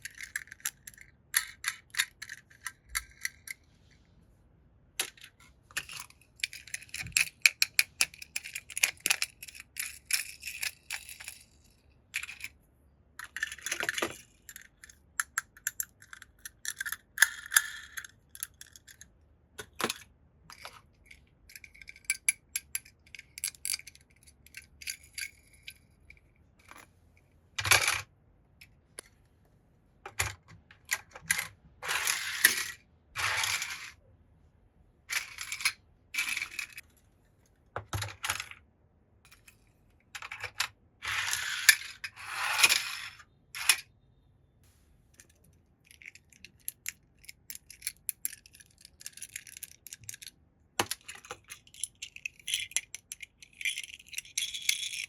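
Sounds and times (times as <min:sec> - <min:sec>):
toy cars clinking together: 0:45.9 - 0:55.0.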